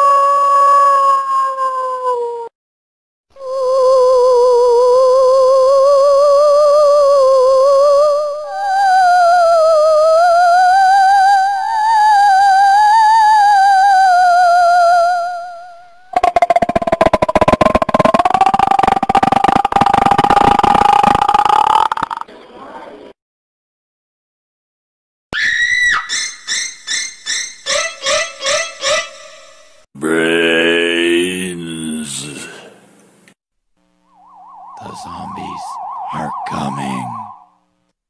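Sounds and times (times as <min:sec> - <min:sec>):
ghostly wailing ringtone: 0:34.1 - 0:37.6.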